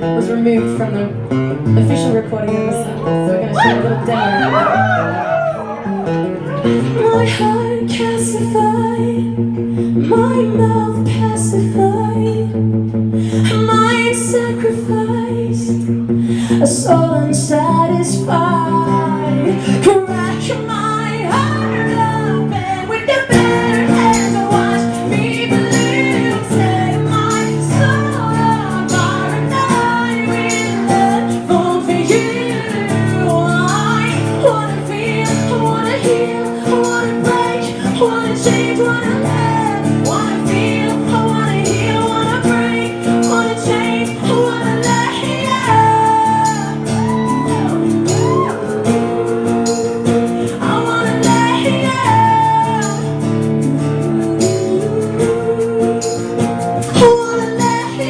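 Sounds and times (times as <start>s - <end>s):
woman singing: 0.0s - 5.8s, 6.5s - 12.7s, 13.4s - 58.0s
acoustic guitar: 0.0s - 58.0s
held chords: 21.4s - 58.0s.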